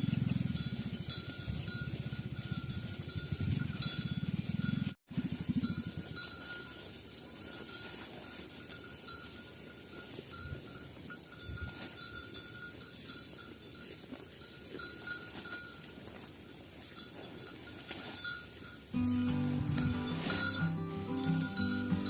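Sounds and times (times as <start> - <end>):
cattle bells clinking: 0.0 - 22.0
music: 19.0 - 22.0.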